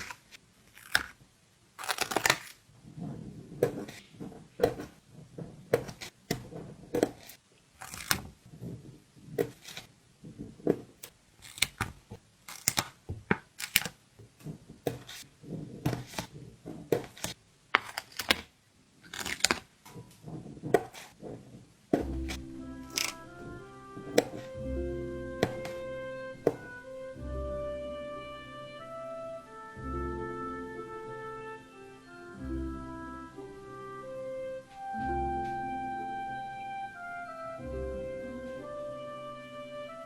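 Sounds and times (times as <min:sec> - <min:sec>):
stickers peeling: 0:01.8 - 0:02.6, 0:11.4 - 0:14.0, 0:22.2 - 0:24.6
stickers tapped down by hand: 0:22.0 - 0:24.6.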